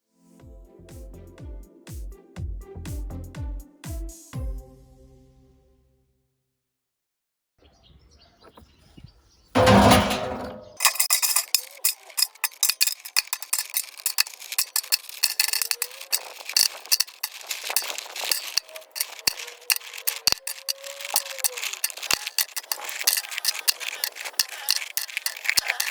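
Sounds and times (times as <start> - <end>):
stones rattling in washing machine: 9.6 - 25.9.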